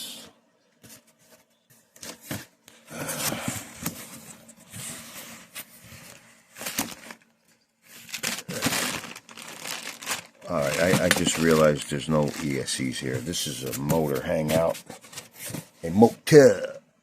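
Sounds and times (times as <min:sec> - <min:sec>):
hands rummaging through parts: 0:03.2 - 0:15.8.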